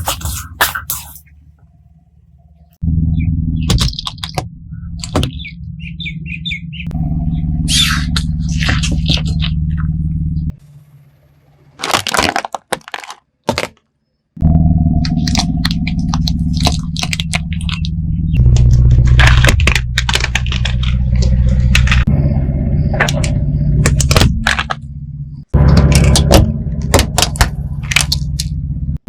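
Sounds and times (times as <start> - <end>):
car engine rumble: 0.0 - 12.2, 14.4 - 29.0
car tyres crushing objects: 7.7 - 10.4, 11.6 - 28.6.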